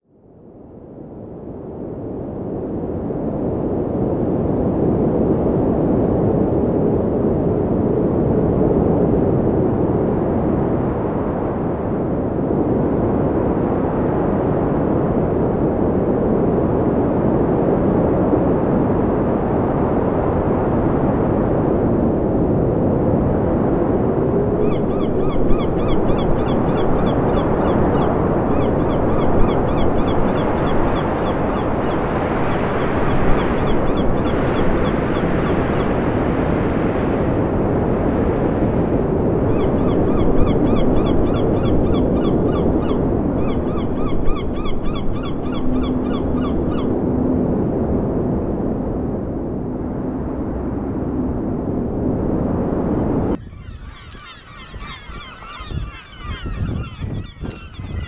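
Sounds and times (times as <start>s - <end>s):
wind: 0.0s - 58.0s
ocean surf: 24.6s - 53.3s.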